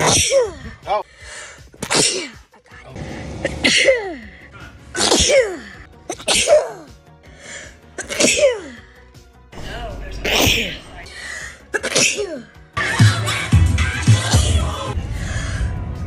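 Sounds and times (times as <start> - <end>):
person sneezing: 1.8 - 2.4, 4.9 - 6.9, 8.0 - 8.8, 10.3 - 10.8, 11.7 - 12.5.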